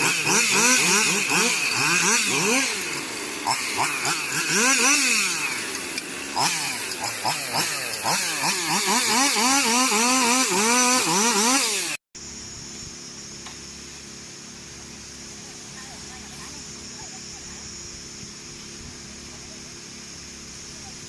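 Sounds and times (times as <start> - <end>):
chainsaw revving: 0.0 - 12.0
steady engine hum: 0.0 - 21.0.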